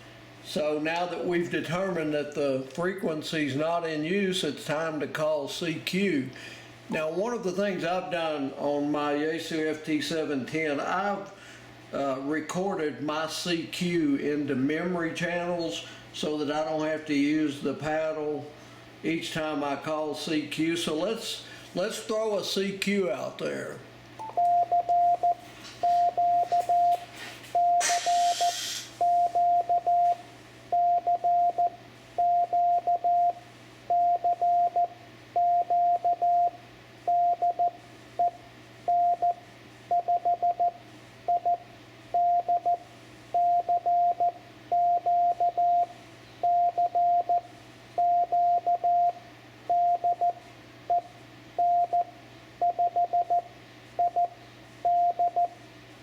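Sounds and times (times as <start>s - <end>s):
morse code tone: 24.2s - 41.6s, 42.2s - 42.8s, 43.4s - 54.3s, 54.9s - 55.6s.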